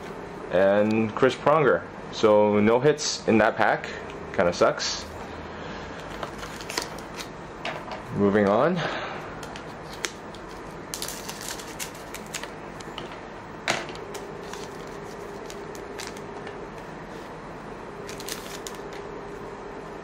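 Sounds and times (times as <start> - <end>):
foil pack crinkling: 6.0 - 7.3, 9.8 - 12.5, 14.1 - 16.3, 18.0 - 19.0.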